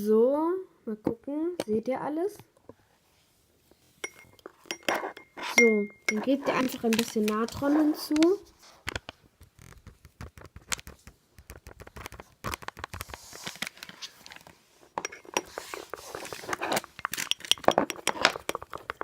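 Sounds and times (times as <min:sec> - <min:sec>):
utensil scraping a container: 0:04.0 - 0:08.5, 0:14.9 - 0:19.0.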